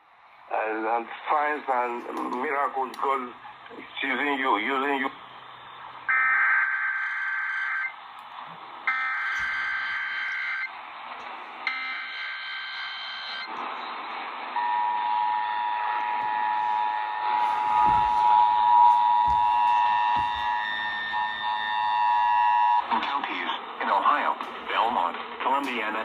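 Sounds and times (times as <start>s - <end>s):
screeching digital data tones: 11.6s - 14.0s
two-tone attention signal: 11.7s - 13.5s.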